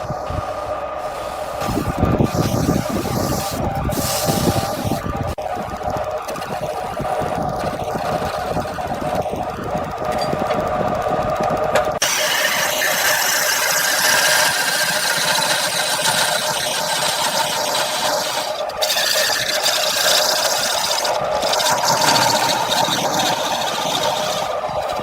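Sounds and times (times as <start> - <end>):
wood lathe scraping hiss: 0.0 - 5.4, 12.0 - 25.0.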